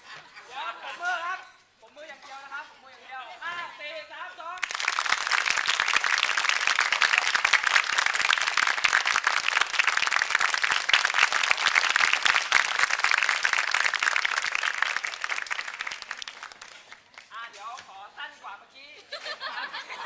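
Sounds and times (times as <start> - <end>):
audience applause: 4.6 - 17.2.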